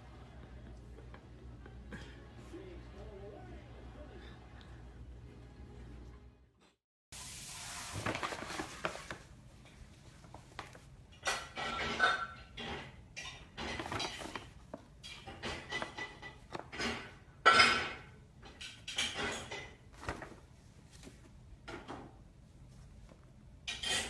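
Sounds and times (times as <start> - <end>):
clattering and scraping of dishes: 11.2 - 19.9, 21.7 - 22.2, 23.6 - 24.0.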